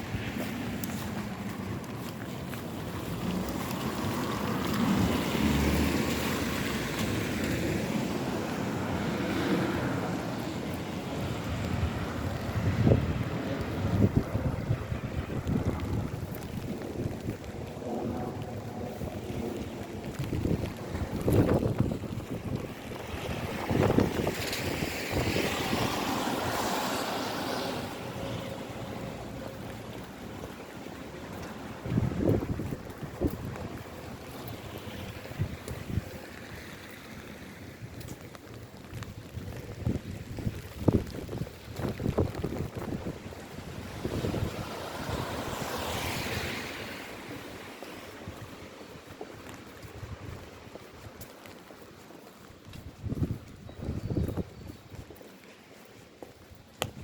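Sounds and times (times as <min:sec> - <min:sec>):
steady rain: 0:00.0 - 0:57.0
tyre hiss on wet road: 0:43.6 - 0:48.7.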